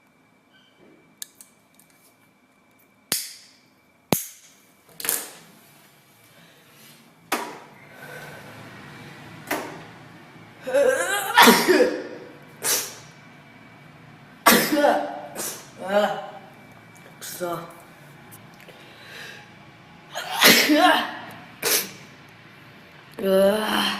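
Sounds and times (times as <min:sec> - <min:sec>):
woman sneezing: 0:11.3 - 0:13.0, 0:14.5 - 0:16.3, 0:20.2 - 0:22.0.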